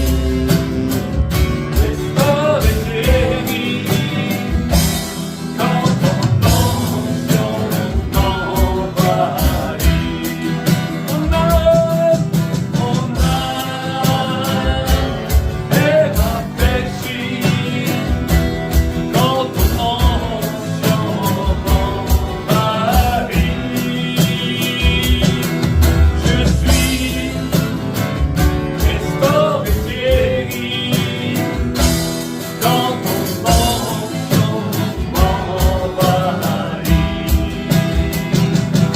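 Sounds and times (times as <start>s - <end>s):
band with steady drum beat: 0.0s - 38.9s
person singing melody: 19.1s - 38.9s.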